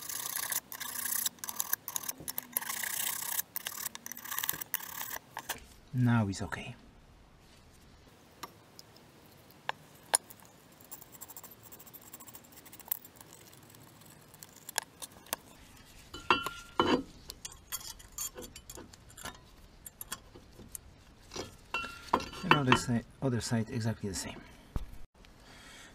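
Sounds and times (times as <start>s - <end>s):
metal tools clicking and tapping: 16.1s - 23.0s.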